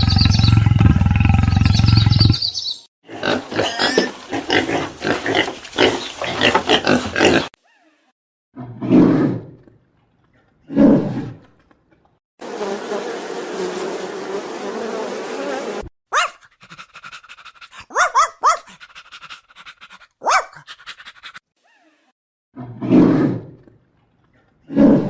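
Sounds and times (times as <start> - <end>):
animal growling: 0.0 - 2.4, 24.7 - 25.0
animal rasping: 3.2 - 7.6
animal yelping: 16.1 - 21.4.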